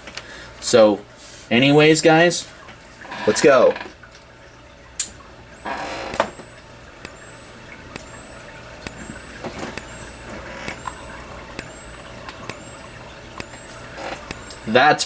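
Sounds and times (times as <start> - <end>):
strobe click: 5.0 - 15.0
faint high rising whine: 5.6 - 15.0.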